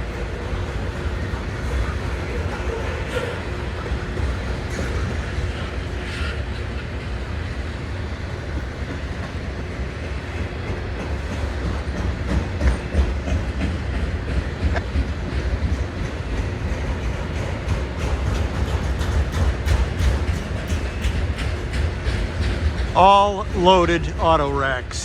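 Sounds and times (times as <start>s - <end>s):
freight train rumbling past: 0.0s - 25.0s
wheels clicking over rail joints: 8.5s - 25.0s.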